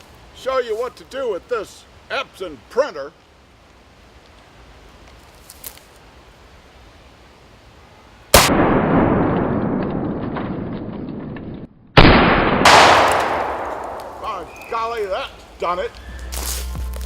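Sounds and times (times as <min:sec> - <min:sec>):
loud blasts with rumble: 0:08.4 - 0:11.4, 0:12.0 - 0:14.6.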